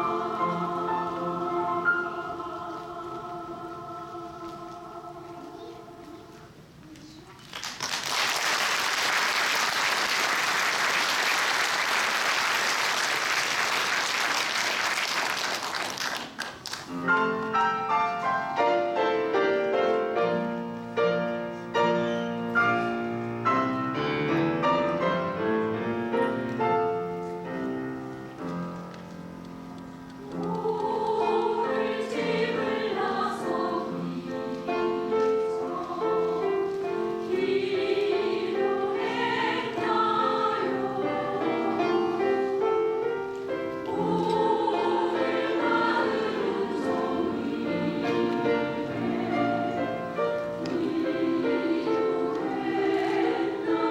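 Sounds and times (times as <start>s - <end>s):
piano accompaniment: 0.0s - 6.6s, 16.8s - 53.9s
women's choir singing: 0.0s - 6.8s, 30.0s - 53.9s.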